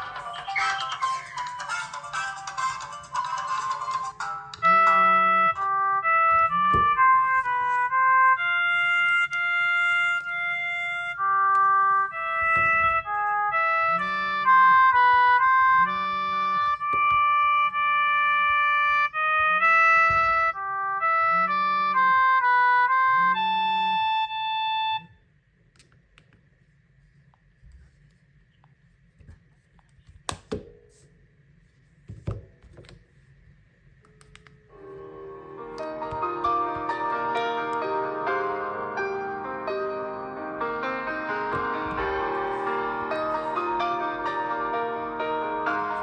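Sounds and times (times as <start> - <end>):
electronic phone ringtone: 0.0 - 7.3, 21.4 - 25.2.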